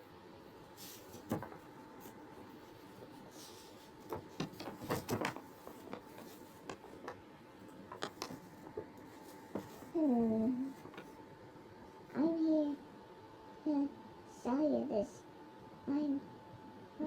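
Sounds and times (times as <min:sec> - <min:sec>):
faint steady hum: 0:00.0 - 0:17.0
handling clicks and taps: 0:07.9 - 0:08.8.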